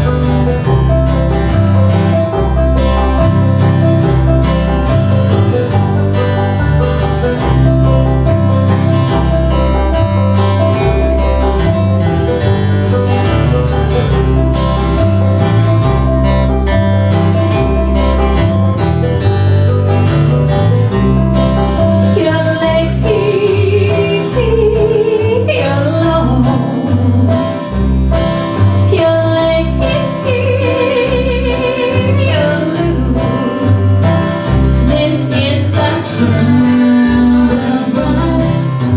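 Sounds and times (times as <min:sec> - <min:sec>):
banjo and guitar picking: 0:00.0 - 0:38.9
steady bass: 0:00.0 - 0:38.9
woman singing: 0:22.1 - 0:27.7, 0:28.8 - 0:33.9, 0:34.8 - 0:38.9.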